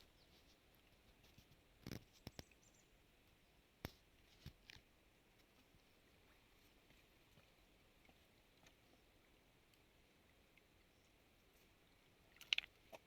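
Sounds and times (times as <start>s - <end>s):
faint clicks: 0.4s - 2.7s.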